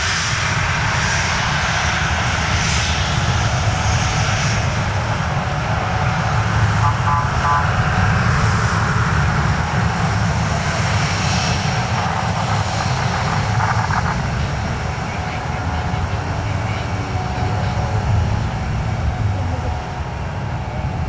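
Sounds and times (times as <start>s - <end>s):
jet engines running: 0.0s - 21.0s.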